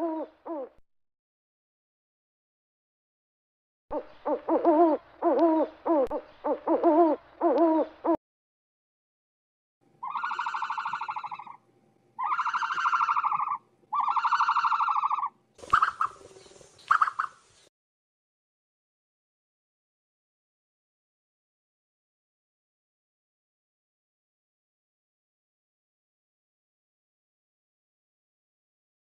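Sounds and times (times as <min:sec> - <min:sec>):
owl hooting: 0:00.0 - 0:00.8, 0:03.9 - 0:08.2, 0:10.0 - 0:11.6, 0:12.2 - 0:17.4
owl buzzy trilling calls: 0:03.9 - 0:08.2, 0:10.0 - 0:11.6, 0:12.2 - 0:17.5.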